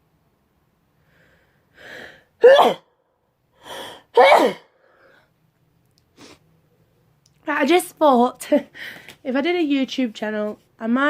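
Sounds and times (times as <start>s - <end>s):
woman sneezing: 2.4s - 2.9s, 4.1s - 4.7s.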